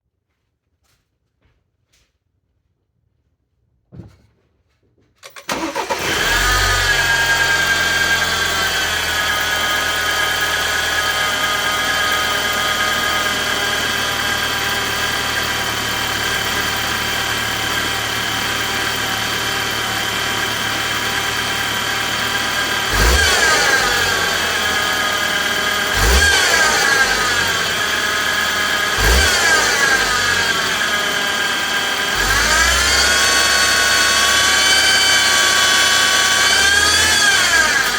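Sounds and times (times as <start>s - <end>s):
car engine starting and idling: 5.2s - 37.9s
engine high whine: 5.4s - 37.9s.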